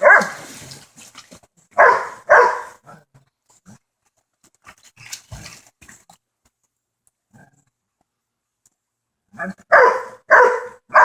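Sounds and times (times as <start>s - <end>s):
dog barking: 0.0s - 0.4s, 1.8s - 2.9s, 9.4s - 11.0s.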